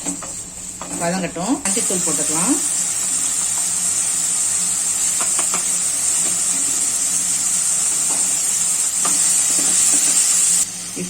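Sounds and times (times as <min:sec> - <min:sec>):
tomatoes sizzling in oil: 0:00.0 - 0:11.0.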